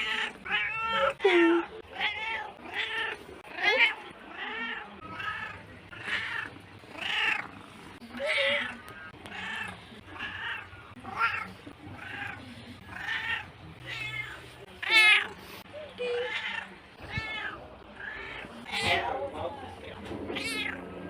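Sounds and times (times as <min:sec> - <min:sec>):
cat meowing: 0:08.2 - 0:15.4, 0:16.1 - 0:19.1, 0:20.3 - 0:20.8.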